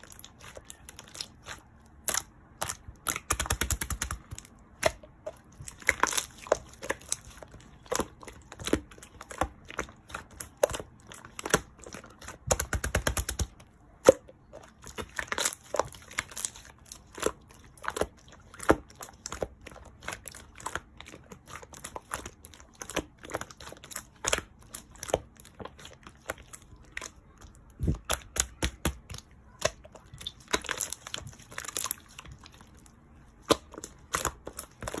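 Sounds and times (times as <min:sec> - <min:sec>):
slime squished by hand: 0:00.0 - 0:35.0.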